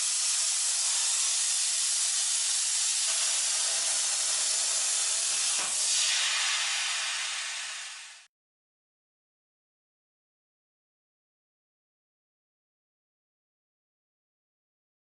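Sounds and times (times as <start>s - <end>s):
plasma torch hissing: 0.0s - 8.3s.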